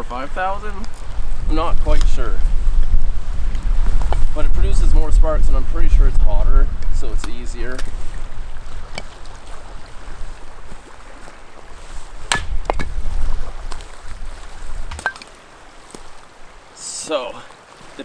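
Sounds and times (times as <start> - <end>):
sticks knocking and snapping: 12.2 - 13.9, 14.8 - 16.1.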